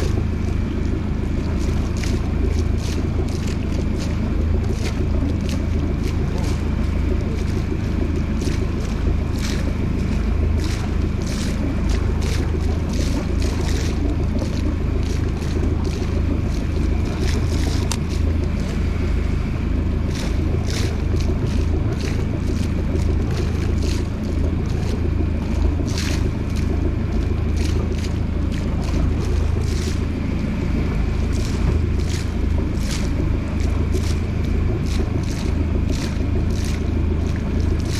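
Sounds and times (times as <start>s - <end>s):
boat engine droning: 0.0s - 37.9s
water splashing against hull: 0.0s - 37.9s.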